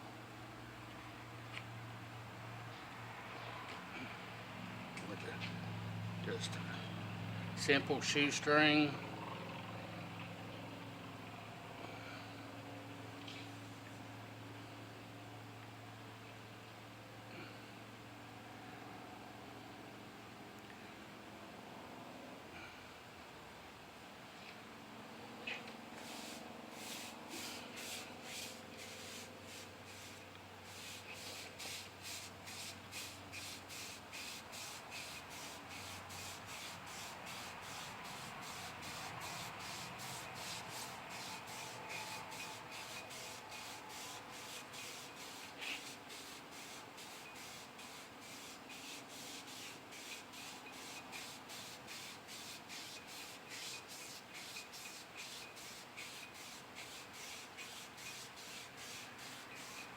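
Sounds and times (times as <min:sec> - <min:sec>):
shoestring rubbing on metal: 0:25.5 - 0:59.9.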